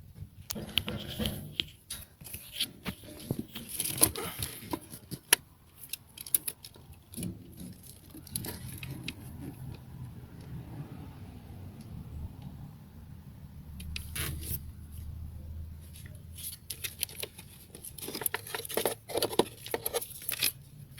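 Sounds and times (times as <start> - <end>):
plastic parts rubbing and scraping: 0.2 - 10.5, 13.8 - 15.1, 15.8 - 20.9.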